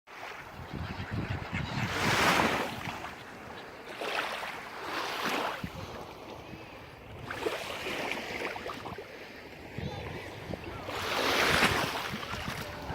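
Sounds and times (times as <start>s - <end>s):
sea waves breaking on shore: 0.1s - 0.8s, 1.4s - 12.9s.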